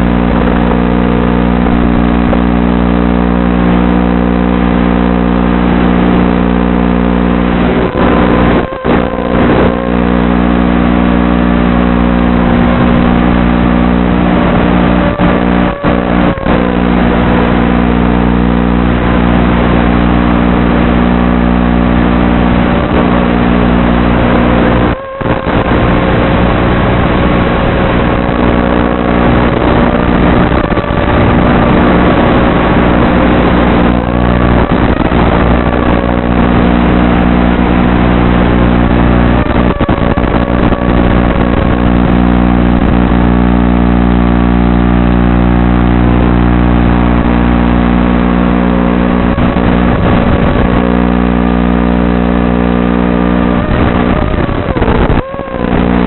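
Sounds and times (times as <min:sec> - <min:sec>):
quadcopter motors whining: 0:07.6 - 0:10.7, 0:23.0 - 0:32.1, 0:53.8 - 0:56.0.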